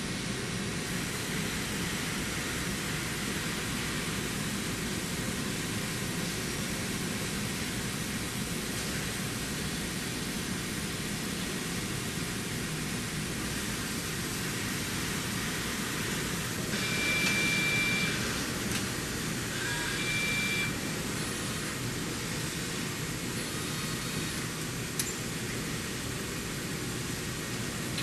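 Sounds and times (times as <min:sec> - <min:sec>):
milling machine hum: 0:12.4 - 0:28.0
high-pitched whine: 0:19.5 - 0:21.6.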